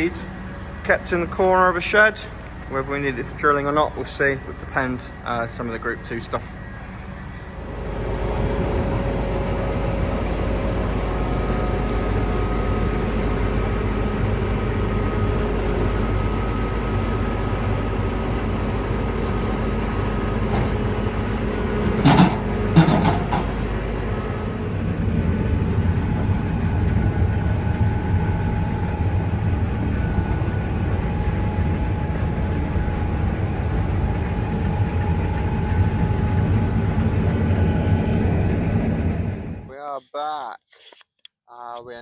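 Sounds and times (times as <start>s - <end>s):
heavy diesel engine running: 0.0s - 39.8s
sharp knocks: 20.5s - 21.0s, 21.8s - 23.8s.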